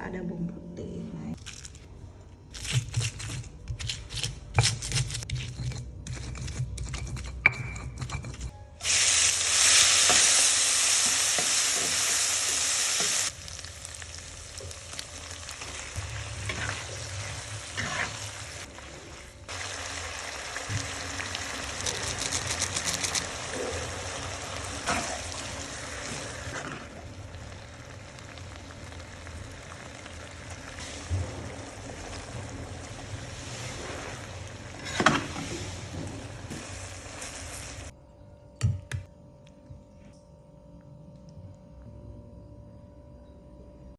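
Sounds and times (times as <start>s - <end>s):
food sizzling in hot oil: 8.8s - 37.9s.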